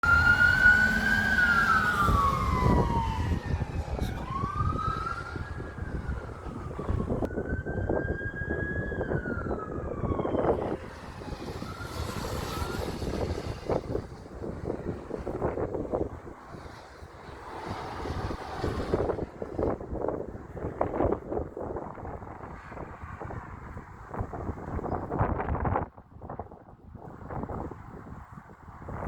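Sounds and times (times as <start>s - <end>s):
fire truck sirens wailing: 0.0s - 16.8s, 17.5s - 22.6s
truck engines rumbling: 0.0s - 25.4s
road noise: 0.0s - 29.0s.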